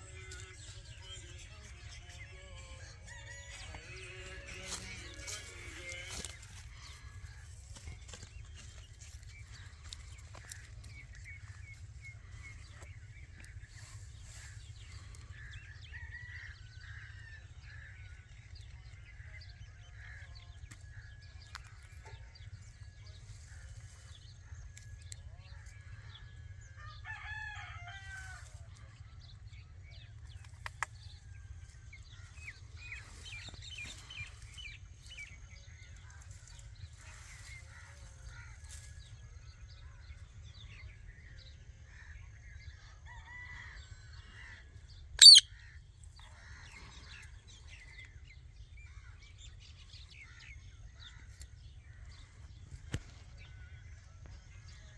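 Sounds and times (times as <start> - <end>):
birds chirping: 0.0 - 26.3, 45.2 - 45.5.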